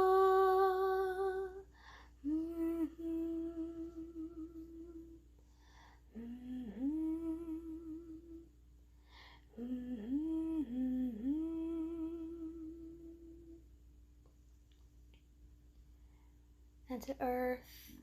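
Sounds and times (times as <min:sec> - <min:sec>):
person humming a melody: 0:00.0 - 0:05.2, 0:06.1 - 0:08.5, 0:09.5 - 0:13.6
person breathing in: 0:01.7 - 0:02.2, 0:05.5 - 0:06.1, 0:09.0 - 0:09.6.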